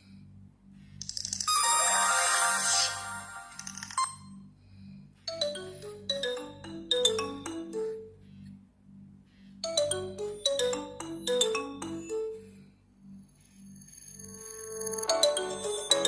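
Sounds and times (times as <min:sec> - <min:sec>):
phone ringtone melody: 0:01.5 - 0:04.1, 0:05.3 - 0:08.1, 0:09.6 - 0:12.6, 0:14.2 - 0:16.0
faint low hum: 0:03.6 - 0:15.4.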